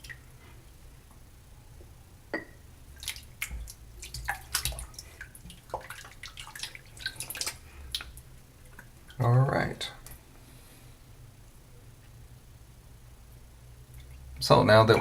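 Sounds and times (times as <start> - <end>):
lather wet crackles and clicks: 3.0 - 9.2.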